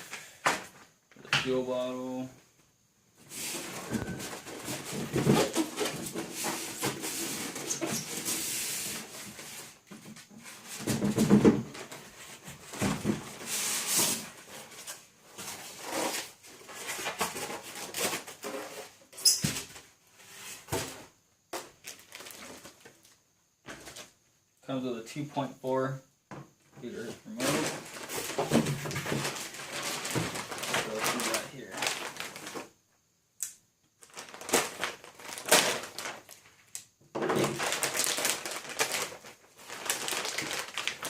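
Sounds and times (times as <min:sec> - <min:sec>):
packaging rustling and crackling: 0:21.6 - 0:24.1, 0:27.3 - 0:32.8, 0:34.0 - 0:41.0.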